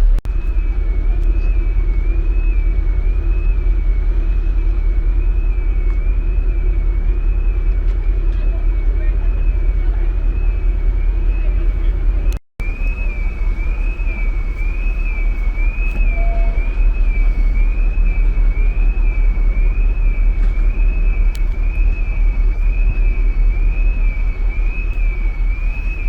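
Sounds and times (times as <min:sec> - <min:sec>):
low rumble: 0:00.0 - 0:26.0
warbling siren-like tone: 0:00.0 - 0:26.0.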